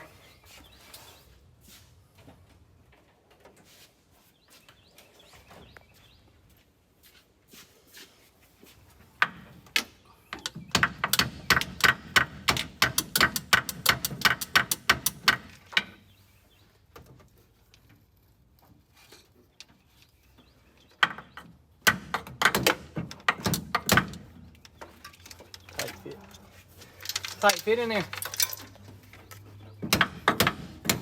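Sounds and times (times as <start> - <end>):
sharp metallic clicks and clanks: 21.8 - 31.0.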